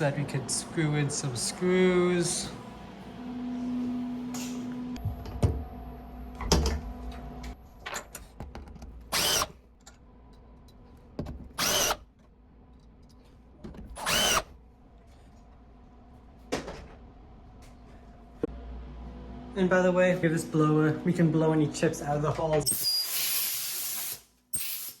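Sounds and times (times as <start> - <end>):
power drill driving screws: 9.1 - 9.6, 11.6 - 12.0, 14.0 - 14.5.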